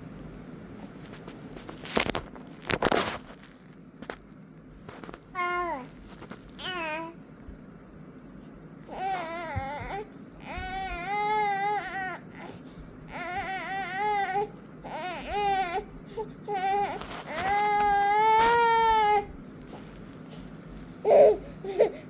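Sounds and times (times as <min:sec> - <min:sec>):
baby whining cries: 0:05.4 - 0:06.0, 0:06.6 - 0:07.2, 0:08.9 - 0:19.4, 0:21.0 - 0:22.0.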